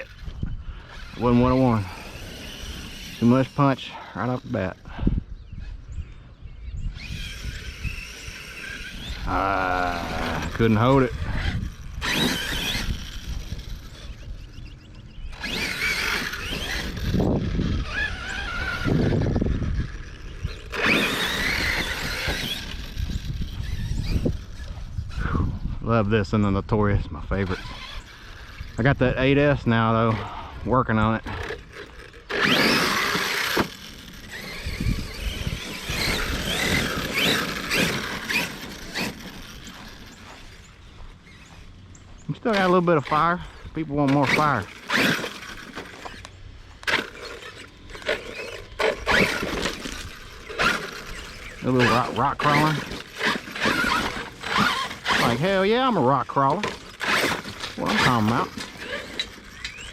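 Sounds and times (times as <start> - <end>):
electric motor whine: 0.0 - 25.6, 27.3 - 59.9.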